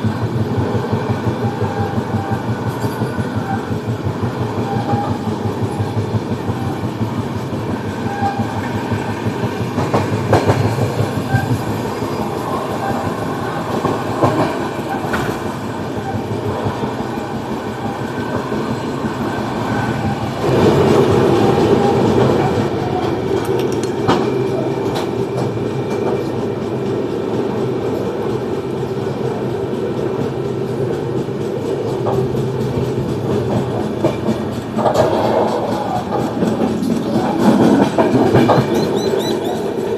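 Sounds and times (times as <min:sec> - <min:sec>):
train wheels rumbling on rails: 0:00.0 - 0:39.9
wheels clacking over rail joints: 0:00.0 - 0:39.9.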